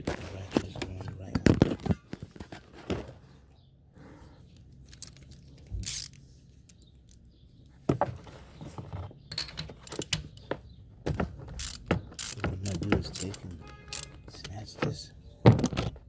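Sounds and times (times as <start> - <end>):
ratchet clicking: 5.8 - 6.2, 11.6 - 14.4
metal tool clicks and knocks: 11.1 - 14.6.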